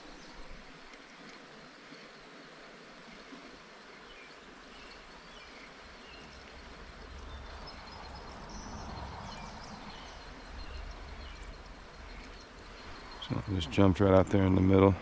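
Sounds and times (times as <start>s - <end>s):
flowing water hiss: 0.0s - 15.0s
bird chirps: 4.8s - 14.0s
low rumble: 6.1s - 14.4s.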